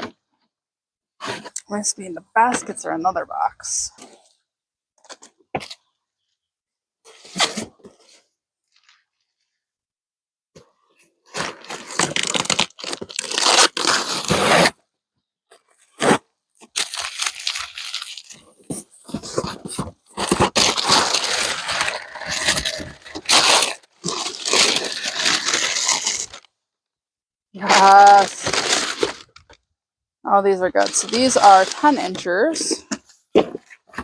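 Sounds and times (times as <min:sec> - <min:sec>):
packing material crinkling: 0:11.3 - 0:14.7, 0:16.0 - 0:26.5, 0:27.6 - 0:29.6, 0:30.8 - 0:32.7
cardboard box tearing: 0:11.3 - 0:14.8, 0:16.0 - 0:26.5, 0:27.6 - 0:29.4, 0:30.8 - 0:32.2.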